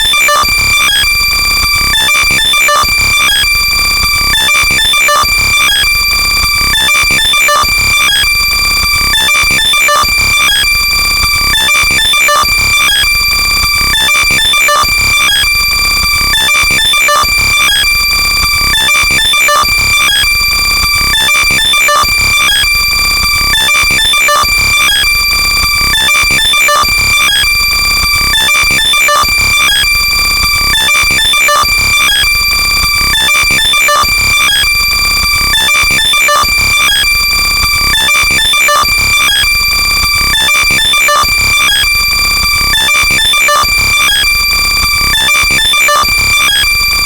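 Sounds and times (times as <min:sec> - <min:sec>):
distorted electronic beeps: 0:45.0 - 0:46.7.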